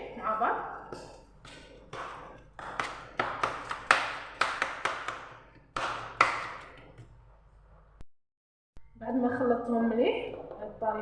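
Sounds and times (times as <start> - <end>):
hands mixing food in tray: 0.1 - 7.1.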